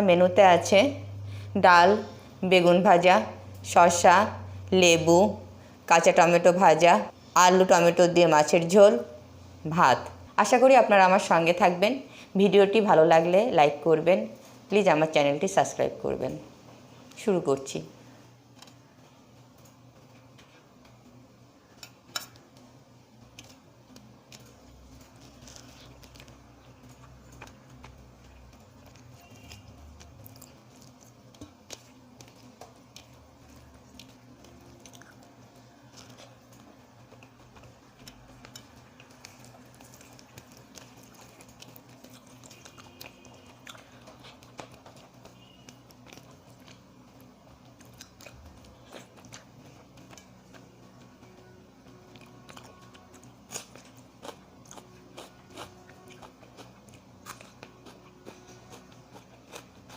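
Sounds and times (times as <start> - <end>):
person chewing food: 23.4 - 51.1, 52.1 - 59.9.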